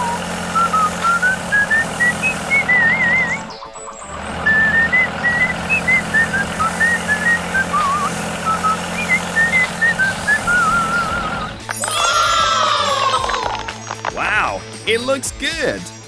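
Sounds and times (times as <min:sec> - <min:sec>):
steady low hum: 0:00.0 - 0:11.7
whistled melody: 0:00.0 - 0:16.0.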